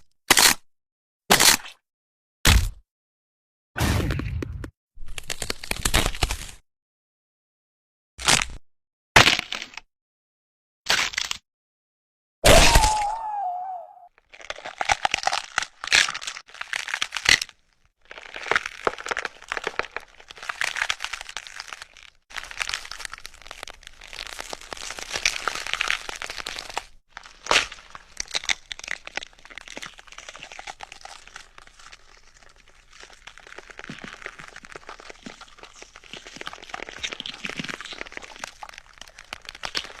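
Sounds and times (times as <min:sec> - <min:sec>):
dense crunching and tearing: 0:00.0 - 0:00.7, 0:01.3 - 0:01.8, 0:05.0 - 0:06.6, 0:08.2 - 0:08.6, 0:10.9 - 0:11.4, 0:12.4 - 0:13.4, 0:14.2 - 0:40.0
bones cracking and snapping: 0:00.3 - 0:00.7, 0:01.3 - 0:01.8, 0:05.0 - 0:06.6, 0:08.2 - 0:08.6, 0:09.2 - 0:09.9, 0:10.9 - 0:11.4, 0:14.2 - 0:40.0.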